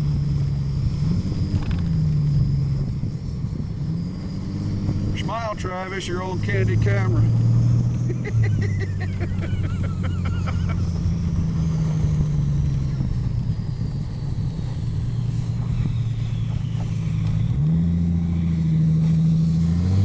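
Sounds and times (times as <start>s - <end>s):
car engine running: 0.0s - 20.0s.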